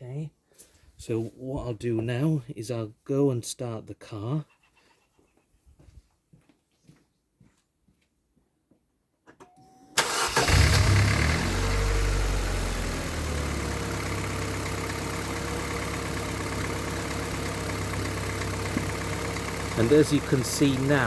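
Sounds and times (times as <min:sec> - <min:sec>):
car engine starting and idling: 0:10.0 - 0:21.0.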